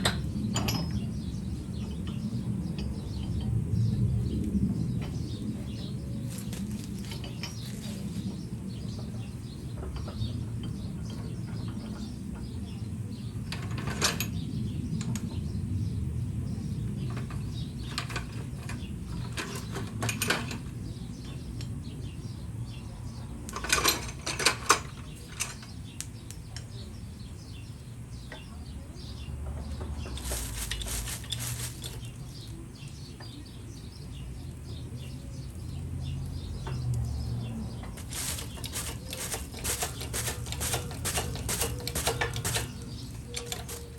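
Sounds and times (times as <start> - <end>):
steady low hum: 37.8 - 43.9
metal clinks and knocks: 37.9 - 43.9.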